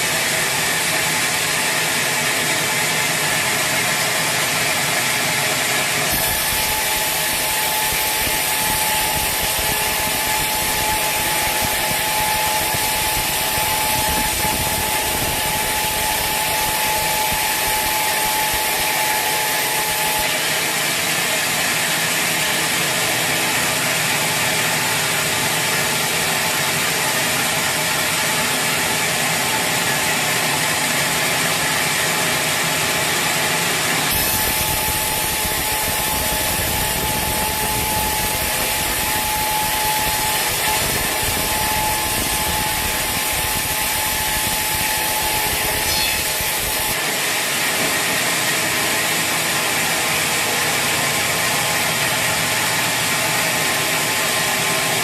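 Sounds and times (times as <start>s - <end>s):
high machine hum: 0.0s - 55.0s
saw blade rasping through wood: 6.0s - 20.3s.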